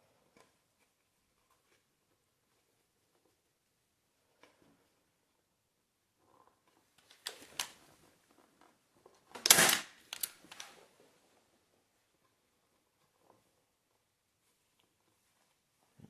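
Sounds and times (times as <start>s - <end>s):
staple gun firing: 9.4s - 10.3s.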